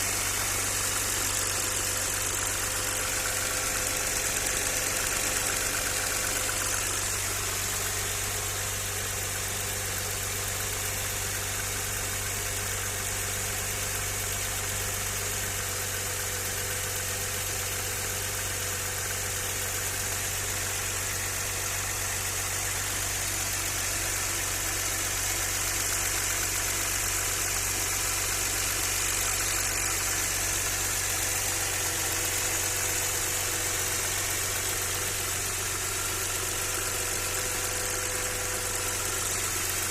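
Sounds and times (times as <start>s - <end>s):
car engine idling: 0.0s - 39.9s.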